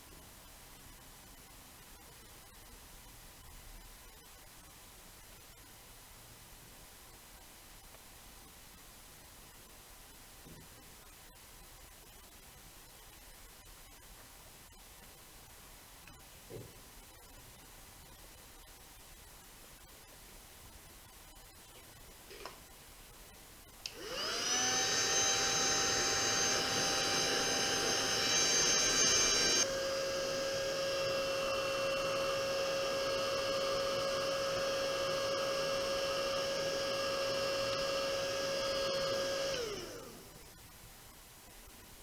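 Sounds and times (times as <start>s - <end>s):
hair dryer whining: 23.8s - 40.5s.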